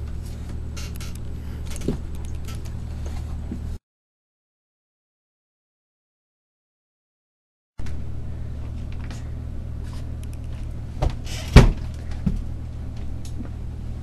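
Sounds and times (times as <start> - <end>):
steady low rumble: 0.0 - 3.8, 7.8 - 14.0.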